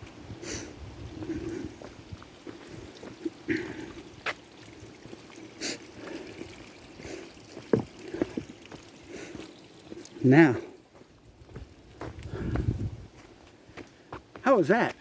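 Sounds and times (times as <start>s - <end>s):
footsteps on footbridge: 7.6s - 10.1s, 10.9s - 15.0s.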